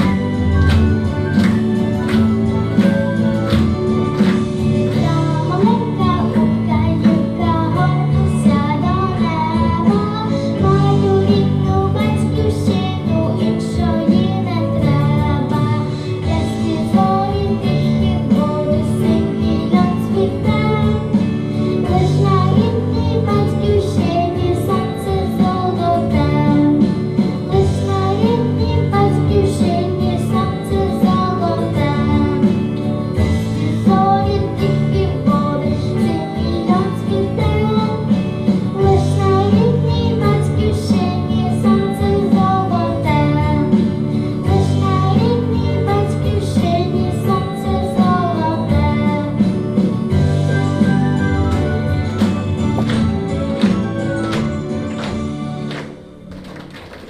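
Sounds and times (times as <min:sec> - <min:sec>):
backing track with steady beat: 0:00.0 - 0:57.0
girl singing: 0:04.8 - 0:49.8.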